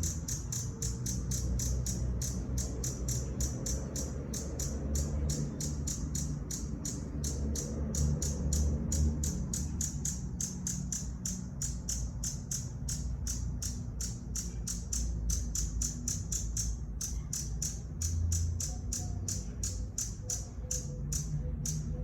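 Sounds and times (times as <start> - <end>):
hummingbird chip calls: 0.0 - 22.0.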